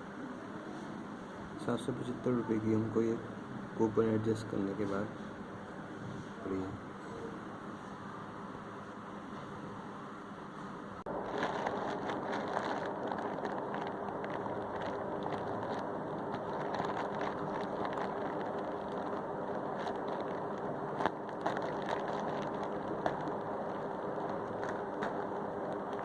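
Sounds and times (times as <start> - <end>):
steady background hiss: 0.0 - 26.0
plastic packaging crinkling: 11.1 - 26.0.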